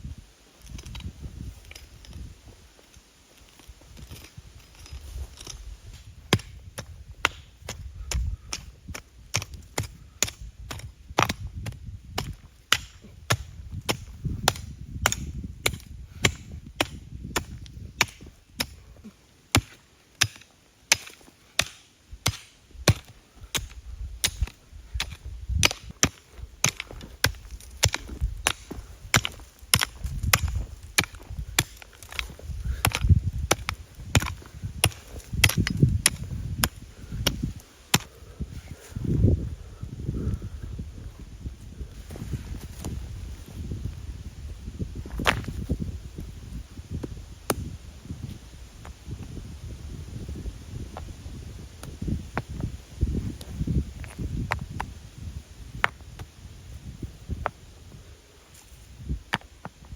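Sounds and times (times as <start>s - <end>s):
blade chopping wood: 6.3s - 18.8s, 19.5s - 38.1s, 45.1s - 45.6s.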